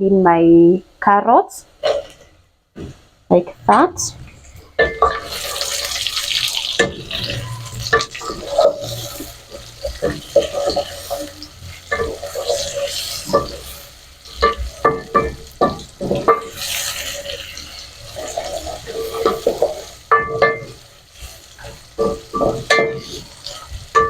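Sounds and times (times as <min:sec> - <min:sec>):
vegetables sizzling in oil: 0:01.6 - 0:24.0
spoon scraping a pot: 0:04.8 - 0:24.0.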